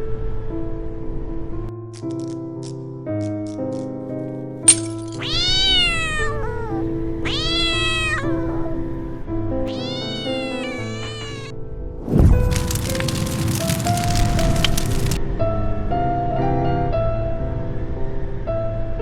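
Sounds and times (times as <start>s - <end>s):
sharp click: 2.0s - 4.0s
cat meowing: 5.2s - 8.9s, 9.6s - 11.6s.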